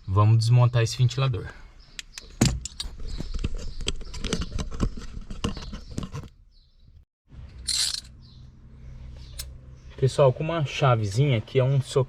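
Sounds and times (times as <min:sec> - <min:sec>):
hands handling parts and tools: 0:07.5 - 0:08.2.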